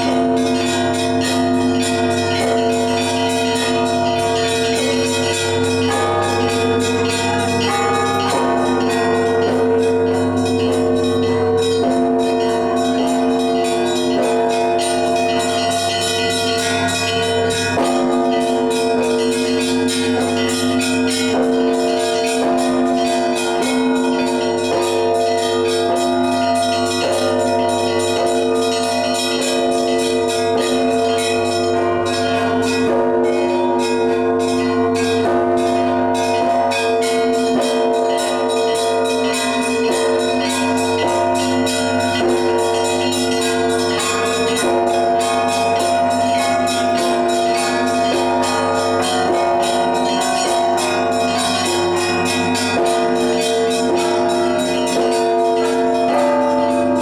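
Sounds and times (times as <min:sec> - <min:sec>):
large bells humming: 0:00.0 - 0:57.0
small bells rapid pattern: 0:33.8 - 0:57.0.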